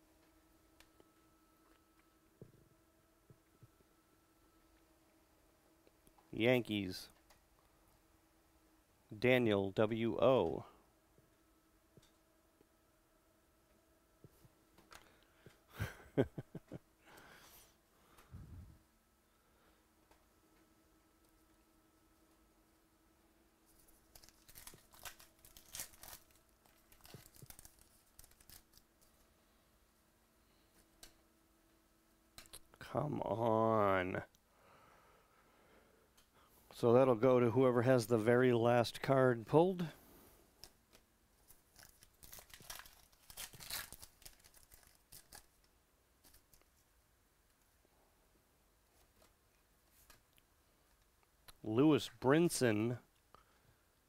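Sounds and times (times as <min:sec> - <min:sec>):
foil wrapper tearing and crinkling: 0:23.8 - 0:29.0, 0:41.4 - 0:46.7.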